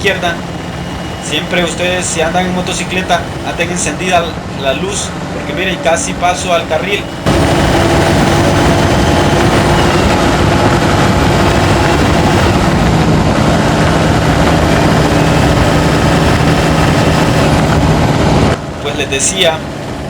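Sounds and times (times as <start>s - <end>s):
diesel engine under load: 0.0s - 20.0s.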